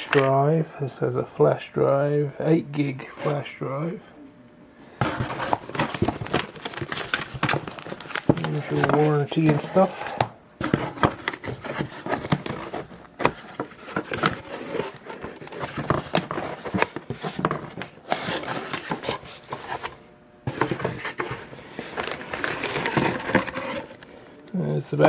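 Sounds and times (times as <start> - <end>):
crinkling plastic bags: 5.0 - 19.9, 20.5 - 24.0
cardboard packaging handled: 5.0 - 24.0.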